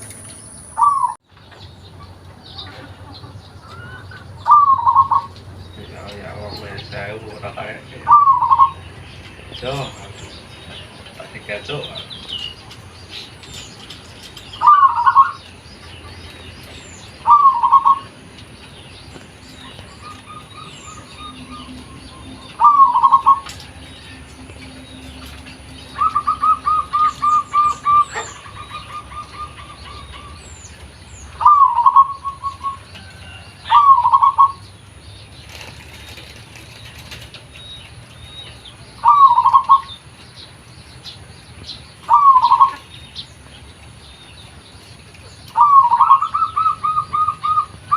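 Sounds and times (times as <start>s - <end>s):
small birds chirping faintly: 0.0s - 47.9s
dove cooing: 0.8s - 1.2s, 2.7s - 8.9s, 14.3s - 15.5s, 17.0s - 34.6s, 39.0s - 40.0s, 42.0s - 42.9s, 45.5s - 47.9s.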